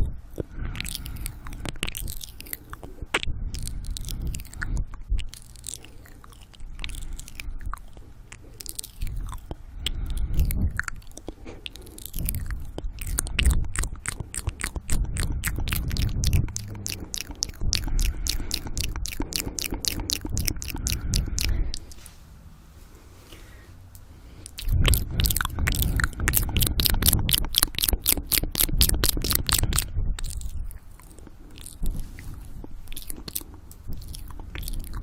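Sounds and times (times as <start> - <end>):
wet mouth clicks and smacks: 0.0 - 22.0, 24.4 - 35.0
heavy breathing: 0.0 - 27.2.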